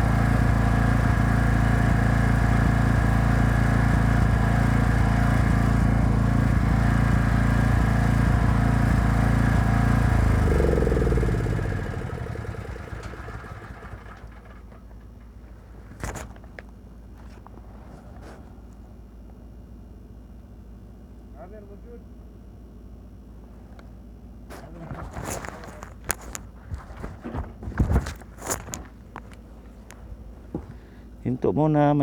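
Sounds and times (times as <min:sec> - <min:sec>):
welding generator engine running: 0:00.0 - 0:16.6.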